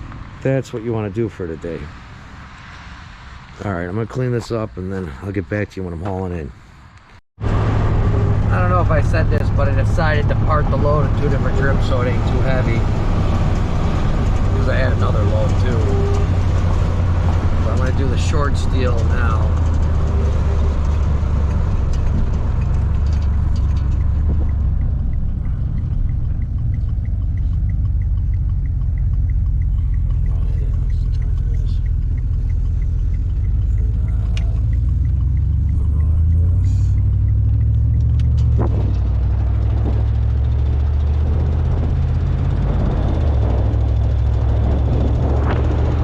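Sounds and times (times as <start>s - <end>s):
vehicle engine rumble: 0.0s - 46.0s
faint even ticking: 8.6s - 44.8s.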